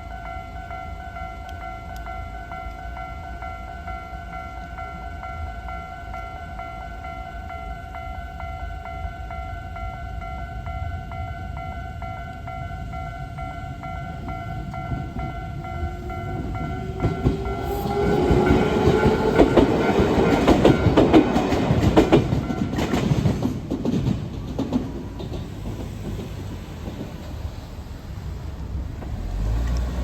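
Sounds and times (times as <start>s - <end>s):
crossing warning bell ringing: 0.0s - 26.2s
train wheels clacking on rail joints: 13.9s - 27.7s
train motor whine: 14.6s - 23.2s.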